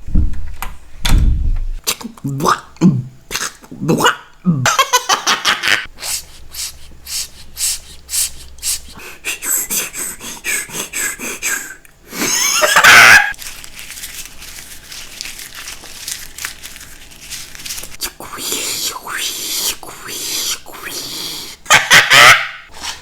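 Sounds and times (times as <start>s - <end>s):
man making mouth noises: 1.8s - 4.7s, 6.0s - 11.9s, 18.0s - 21.6s.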